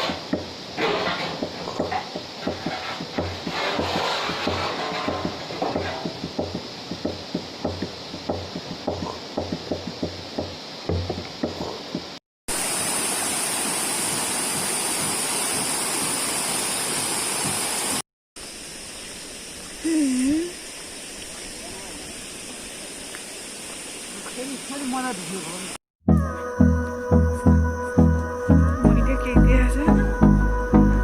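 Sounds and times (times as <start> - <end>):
sharp taps and knocks: 0.0 - 12.2
low regular thud: 0.1 - 12.2
waterfall rushing: 12.5 - 18.0.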